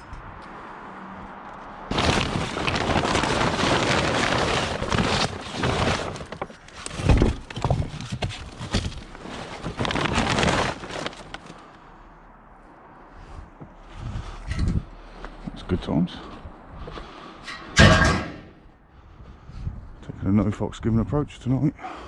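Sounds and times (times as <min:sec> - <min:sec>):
scrap metal clattering: 0:01.9 - 0:11.6, 0:17.4 - 0:18.6.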